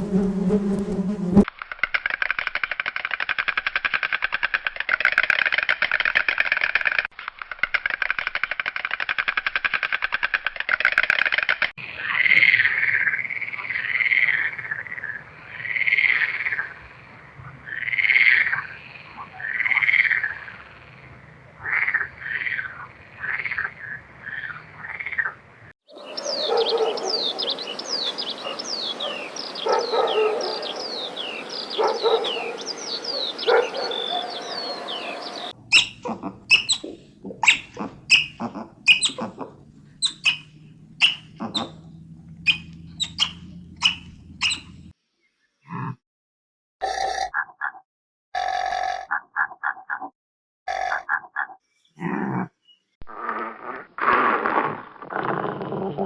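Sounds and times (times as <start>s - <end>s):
repeated animal calls: 11.8s - 44.9s, 46.8s - 47.8s, 48.4s - 50.1s, 50.7s - 56.0s
rapid buzzing animal trill: 40.0s - 44.7s.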